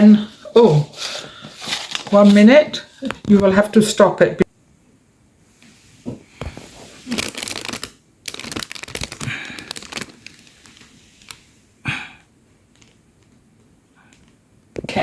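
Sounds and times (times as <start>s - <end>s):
packet rustling and scoop scraping: 1.0s - 2.5s, 6.5s - 11.5s.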